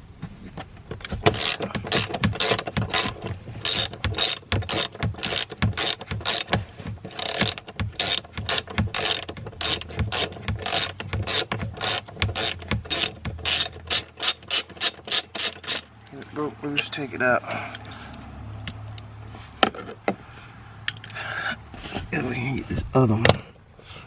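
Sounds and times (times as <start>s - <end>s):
hand ratchet clicking: 1.0s - 15.9s.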